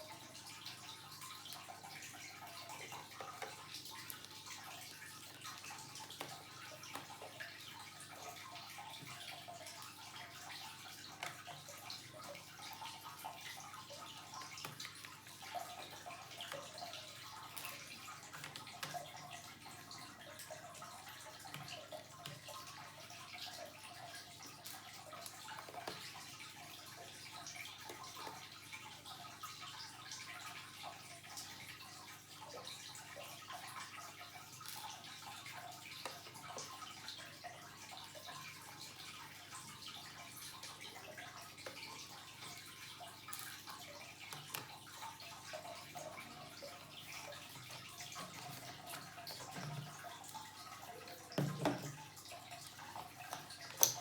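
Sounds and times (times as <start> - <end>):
small clicks and taps: 2.7 - 7.6, 11.0 - 13.0, 14.1 - 19.4, 21.1 - 22.8, 24.6 - 26.4, 41.6 - 46.2, 51.3 - 52.0, 52.6 - 54.0.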